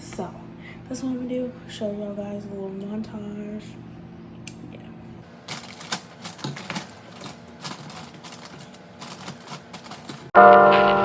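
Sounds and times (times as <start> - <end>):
drinks clicking on fridge shelves: 5.3 - 10.4.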